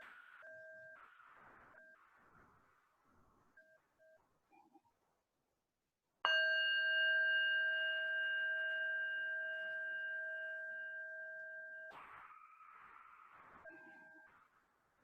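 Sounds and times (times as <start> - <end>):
metal bell strike ringing: 6.3 - 11.8.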